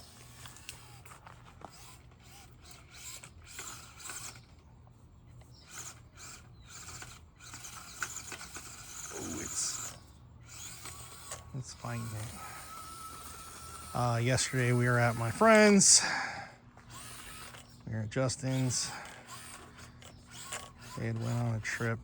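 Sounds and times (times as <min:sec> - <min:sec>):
tires clicking and scraping: 0:00.0 - 0:16.1
small electric motor whirring: 0:00.0 - 0:22.0.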